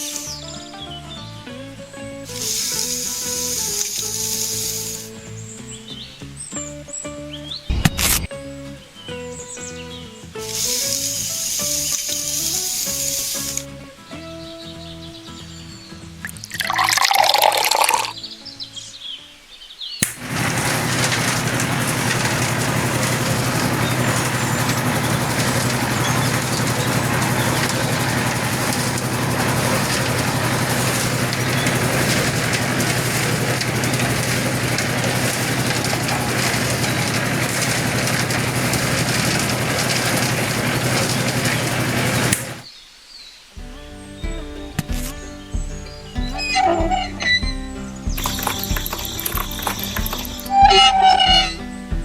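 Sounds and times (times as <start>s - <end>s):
small motor humming and hissing: 2.3s - 5.2s, 10.5s - 13.6s.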